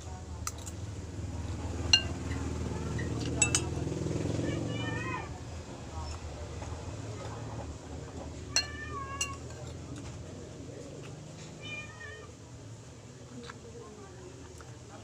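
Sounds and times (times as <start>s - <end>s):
cat meowing: 4.4s - 5.4s, 8.5s - 9.4s, 11.6s - 12.3s.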